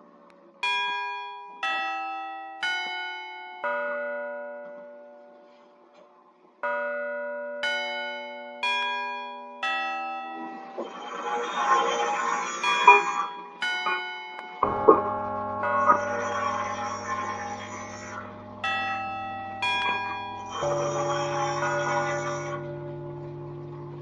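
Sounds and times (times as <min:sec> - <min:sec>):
bell-like chime tones: 0:07.6 - 0:24.0.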